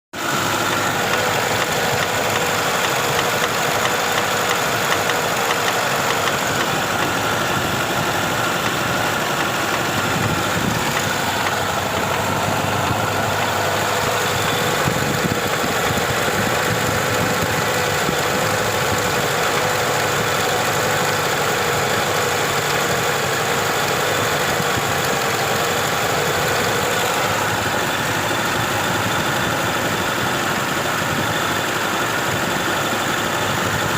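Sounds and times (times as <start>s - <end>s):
engine idling with a knock: 0.6s - 20.3s.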